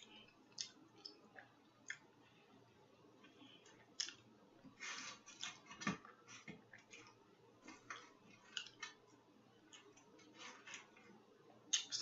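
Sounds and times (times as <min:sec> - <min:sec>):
chewing and lip smacking: 0:00.2 - 0:02.1, 0:03.9 - 0:04.3.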